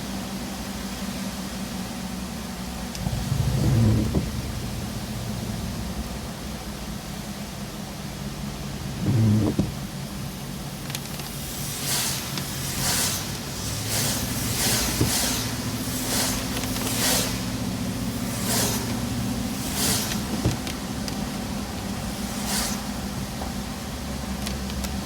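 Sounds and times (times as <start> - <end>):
truck engine and road hum: 0.0 - 25.0
windshield wipers swishing: 3.0 - 4.6, 8.9 - 10.0.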